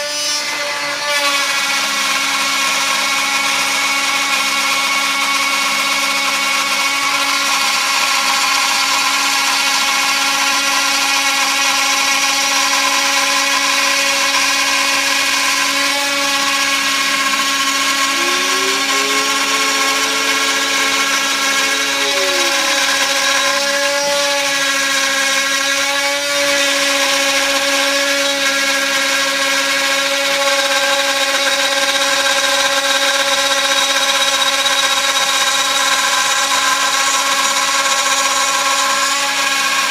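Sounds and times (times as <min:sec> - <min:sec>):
router spindle whine: 0:00.0 - 0:39.9
stepper motor tone: 0:14.3 - 0:24.8.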